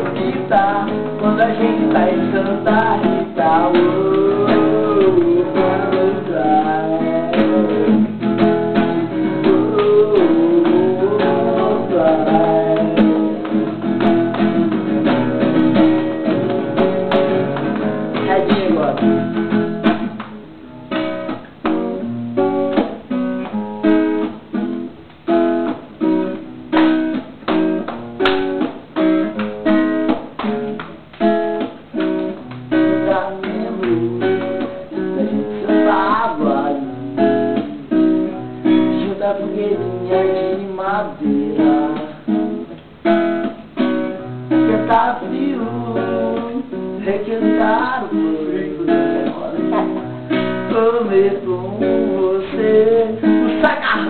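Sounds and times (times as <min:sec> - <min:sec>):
person singing: 0:00.0 - 0:08.2, 0:09.1 - 0:13.7, 0:18.1 - 0:19.2, 0:32.7 - 0:37.6, 0:38.2 - 0:42.5, 0:44.5 - 0:54.0
acoustic guitar strumming: 0:00.0 - 0:54.0.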